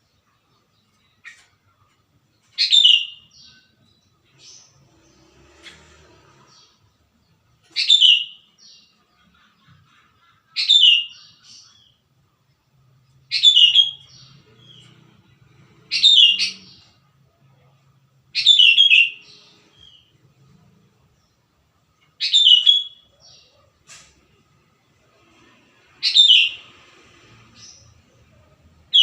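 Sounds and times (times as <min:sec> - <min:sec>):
bird singing: 0:00.0 - 0:04.9, 0:06.5 - 0:12.1, 0:13.1 - 0:23.7, 0:26.0 - 0:26.7.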